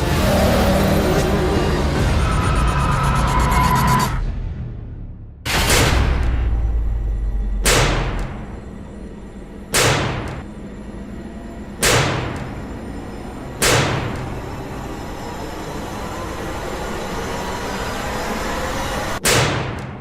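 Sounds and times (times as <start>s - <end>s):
rising swell: 10.4s - 19.2s.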